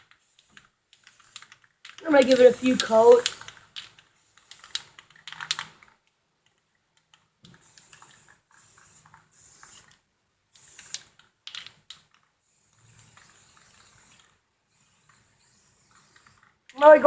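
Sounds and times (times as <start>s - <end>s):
spray paint can hissing: 2.0s - 3.4s, 7.6s - 11.2s, 12.5s - 17.0s.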